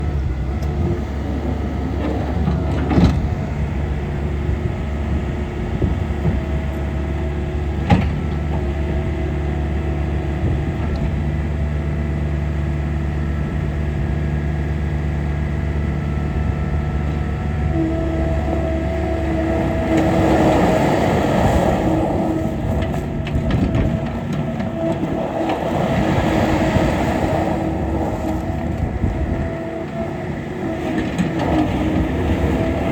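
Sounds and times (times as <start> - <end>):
diesel engine running: 0.0 - 32.9
steady whine: 13.0 - 32.9.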